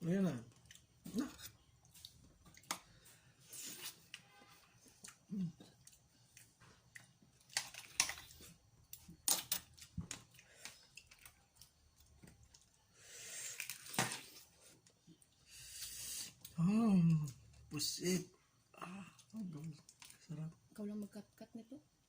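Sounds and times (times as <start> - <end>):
chewing: 0.5 - 4.2, 4.8 - 8.6, 19.0 - 20.6.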